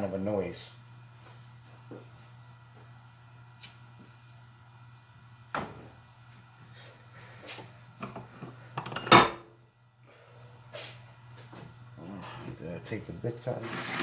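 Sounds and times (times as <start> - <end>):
steady low hum: 0.0 - 13.6
tools clattering: 8.0 - 9.4.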